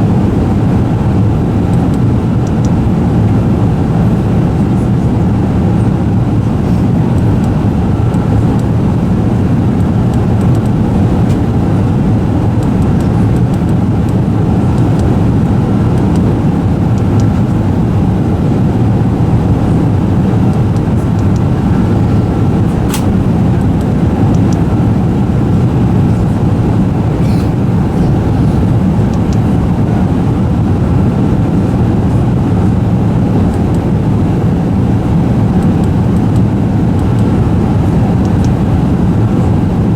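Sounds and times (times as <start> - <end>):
aircraft cabin engine rumble: 0.0 - 39.9
sharp click: 22.8 - 24.6.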